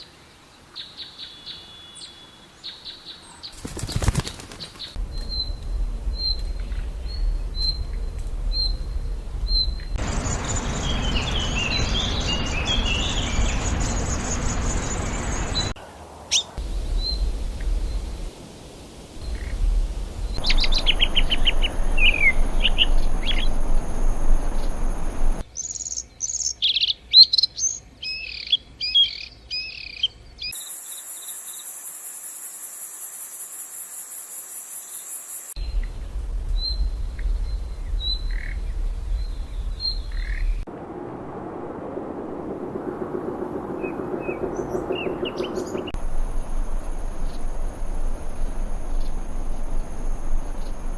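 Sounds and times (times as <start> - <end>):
birds chirping and singing: 0.8 - 18.2, 20.2 - 30.5, 43.8 - 46.0
steady hiss: 4.2 - 25.4, 30.6 - 50.9
high fast pulsing bird trill: 42.1 - 46.0.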